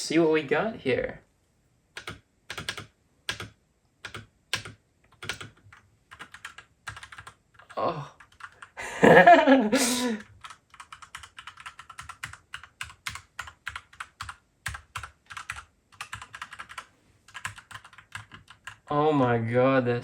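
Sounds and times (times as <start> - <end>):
person exclaiming loudly: 8.8 - 10.2.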